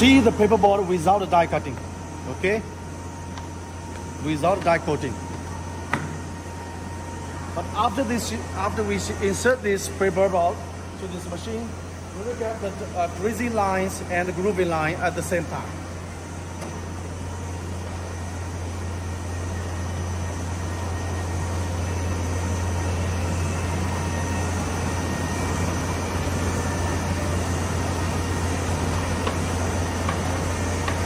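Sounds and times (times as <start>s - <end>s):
creasing machine humming: 0.0s - 31.0s.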